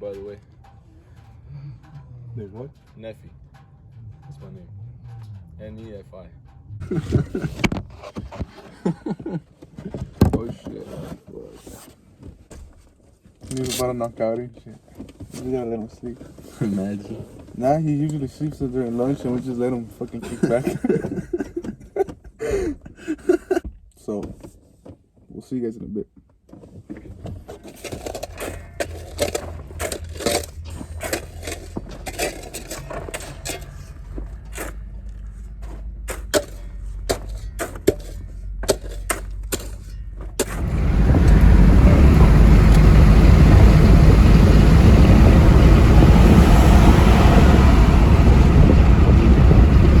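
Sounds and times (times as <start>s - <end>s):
low hum: 0.0s - 7.8s, 27.6s - 50.0s
knocks and clatters: 26.2s - 46.9s
loud steady rushing noise: 40.5s - 50.0s.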